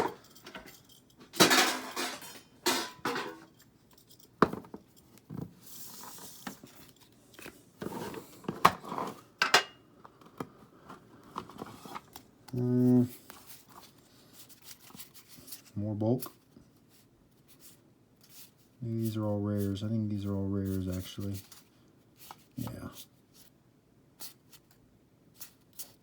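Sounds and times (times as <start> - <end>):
metal tins clanking: 0.0 - 3.6.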